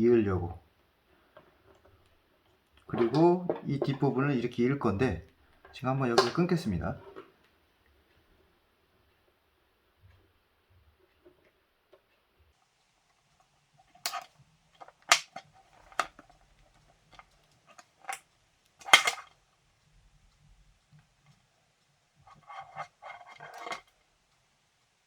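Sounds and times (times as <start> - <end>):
light clicks and rattles: 10.0 - 24.4
cutters snipping power cord: 15.1 - 15.4.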